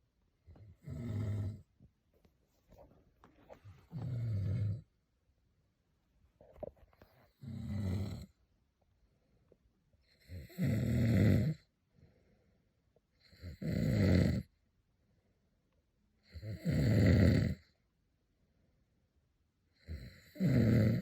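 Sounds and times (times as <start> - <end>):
person snoring loudly: 0.8 - 1.6, 3.9 - 4.8, 7.4 - 8.3, 10.2 - 11.6, 13.4 - 14.5, 16.3 - 17.6, 19.8 - 21.0.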